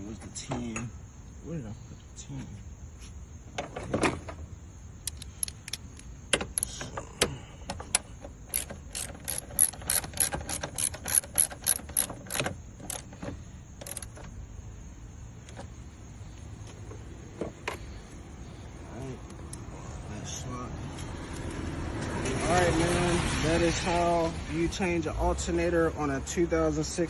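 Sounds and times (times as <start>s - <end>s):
hand ratchet clicking: 5.0s - 13.2s, 13.8s - 14.2s.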